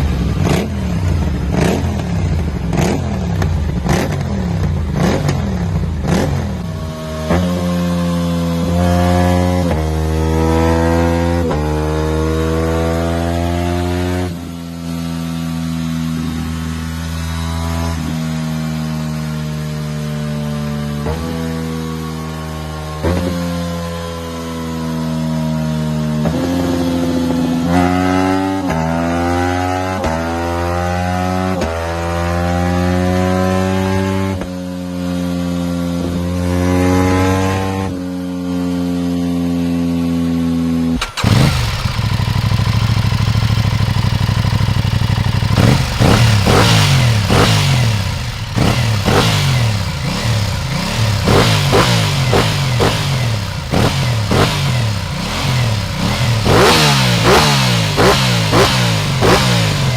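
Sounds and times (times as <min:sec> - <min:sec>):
motorcycle revving in blips: 0:00.0 - 0:15.1, 0:40.8 - 0:59.9
motorcycle accelerating through gears: 0:00.0 - 0:59.9.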